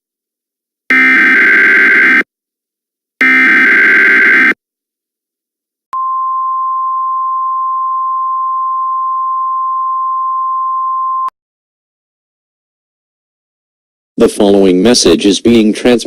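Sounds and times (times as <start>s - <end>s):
emergency alert tone: 3.2s - 4.6s.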